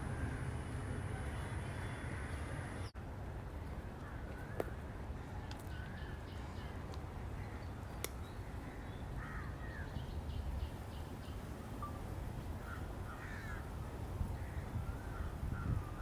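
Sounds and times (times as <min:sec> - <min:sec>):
birdsong: 0:04.0 - 0:16.0
crows cawing: 0:09.2 - 0:09.8, 0:12.7 - 0:13.7.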